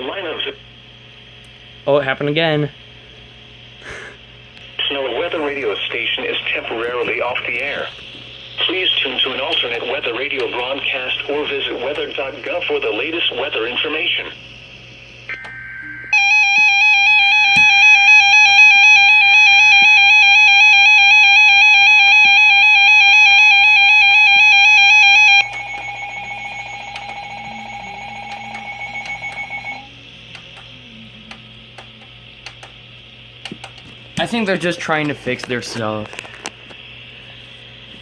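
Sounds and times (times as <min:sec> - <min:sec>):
quieter electronic alarm: 0:07.2 - 0:31.4
rapidly pulsing alarm beeps: 0:15.3 - 0:29.9.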